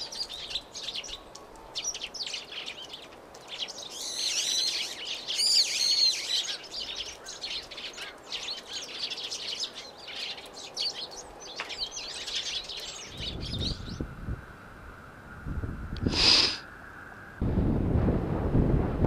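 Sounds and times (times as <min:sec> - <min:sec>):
wild birds chirping: 0:00.0 - 0:17.4.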